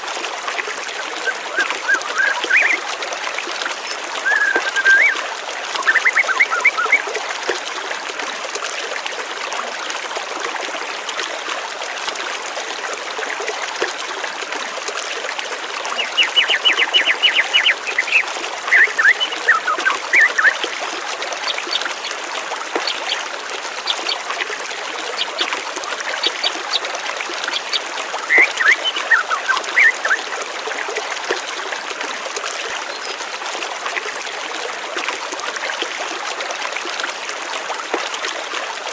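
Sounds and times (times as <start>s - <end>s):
flowing water rushing: 0.0s - 38.9s
small birds chirping: 5.8s - 7.0s, 21.4s - 24.3s, 26.1s - 30.2s.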